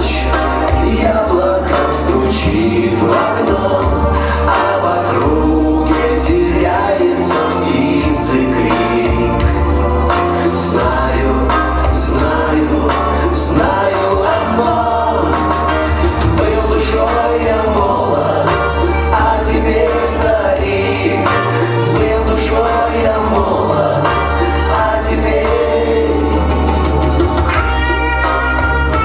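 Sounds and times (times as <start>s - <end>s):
bass: 0.0s - 29.0s
guitar: 0.0s - 29.0s
keyboards: 0.0s - 29.0s.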